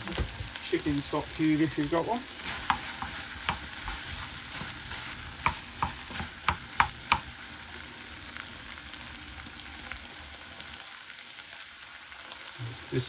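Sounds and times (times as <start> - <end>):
food sizzling in a saucepan: 0.0 - 13.0
utensil clicking against pan: 2.6 - 4.8, 5.4 - 7.3.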